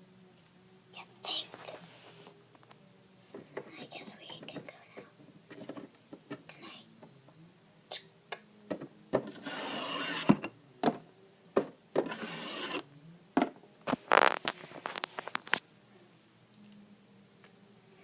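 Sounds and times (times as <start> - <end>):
scraping and rubbing: 9.3 - 10.4, 12.0 - 12.8, 13.9 - 15.6.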